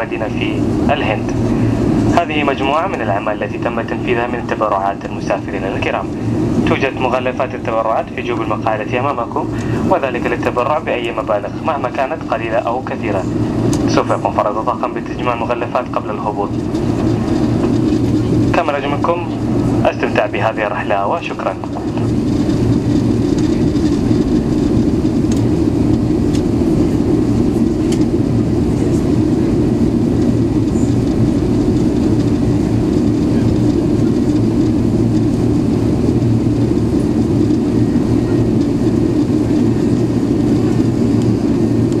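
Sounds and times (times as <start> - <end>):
airflow noise: 0.0 - 42.0
airplane cabin engine drone: 0.0 - 42.0.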